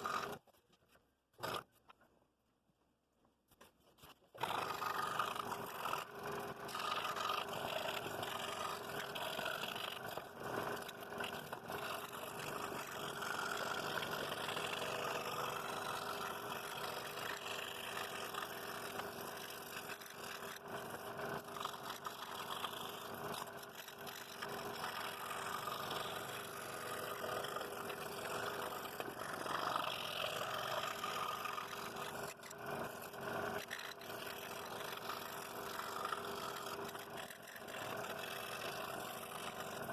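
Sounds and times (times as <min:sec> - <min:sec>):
scroll saw cutting wood: 0:00.0 - 0:00.6, 0:01.3 - 0:02.0, 0:03.9 - 0:39.9.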